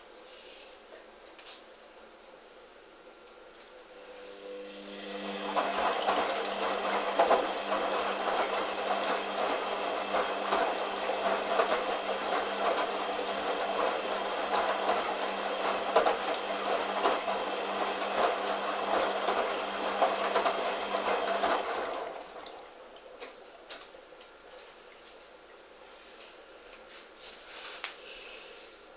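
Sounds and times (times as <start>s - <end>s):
washing machine water splashing: 4.6s - 23.9s.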